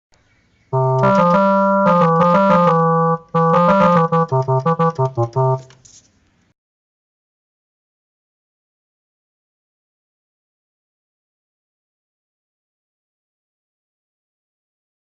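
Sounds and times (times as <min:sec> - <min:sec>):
keyboard music jingle: 0:00.8 - 0:05.7.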